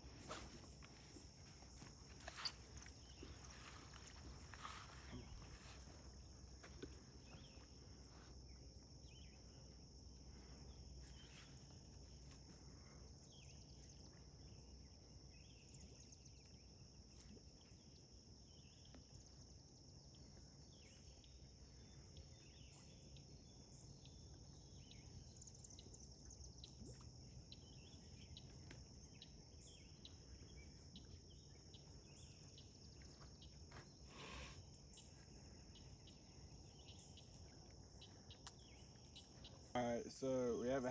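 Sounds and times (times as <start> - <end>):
insects chirping: 0.0 - 40.9
faint ticks: 37.1 - 39.4.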